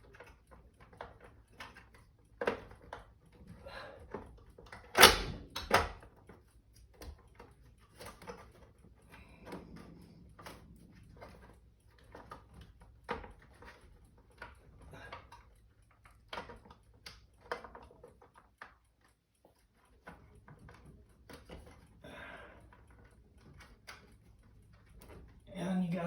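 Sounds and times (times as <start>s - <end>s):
sharp plastic snaps: 4.6s - 6.4s.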